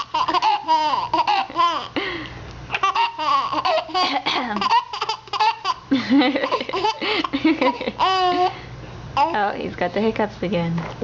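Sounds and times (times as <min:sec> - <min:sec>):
baby laughing: 0:00.0 - 0:02.0, 0:02.7 - 0:08.6, 0:09.2 - 0:09.4.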